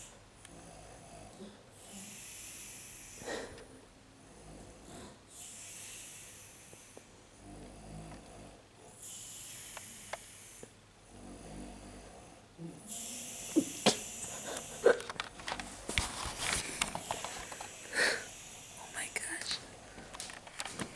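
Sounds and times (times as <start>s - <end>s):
woman snoring: 12.6s - 15.2s, 17.0s - 19.6s
hissing out-breath: 17.7s - 19.0s.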